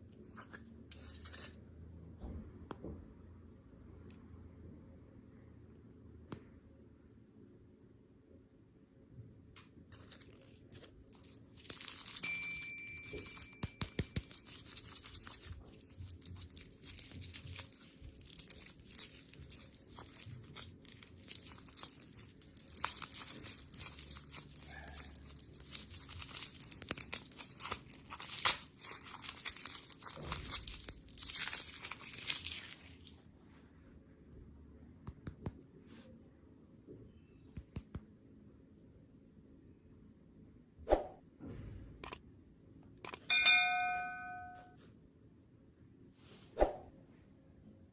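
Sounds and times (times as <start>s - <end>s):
plastic wrappers crinkling: 9.9s - 33.3s.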